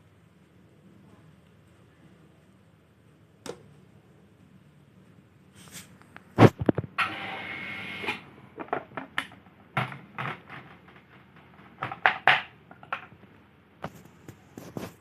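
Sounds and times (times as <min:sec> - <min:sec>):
hard objects clicking and knocking: 0:08.6 - 0:13.4.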